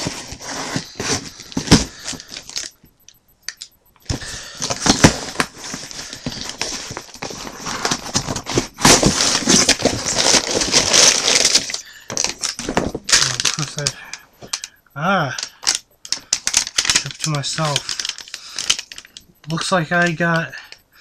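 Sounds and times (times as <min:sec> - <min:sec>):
packaging rustling and crackling: 0:00.0 - 0:02.8, 0:03.5 - 0:14.7, 0:15.4 - 0:19.6
small clicks: 0:02.3 - 0:04.1.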